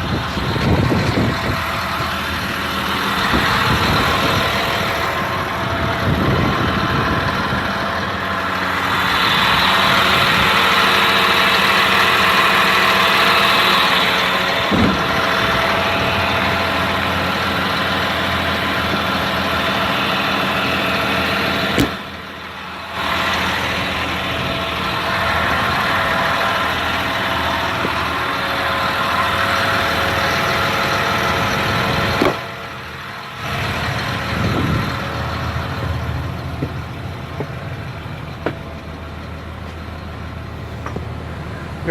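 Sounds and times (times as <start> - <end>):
diesel bus engine idling: 0.0 - 41.9.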